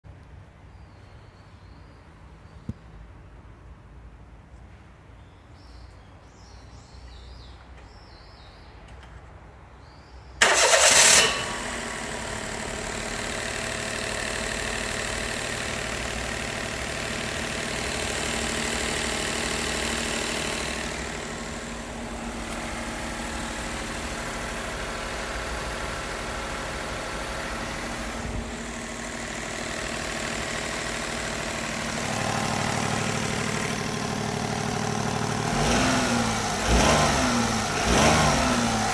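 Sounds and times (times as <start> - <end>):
engine starting and idling: 10.4 - 38.9.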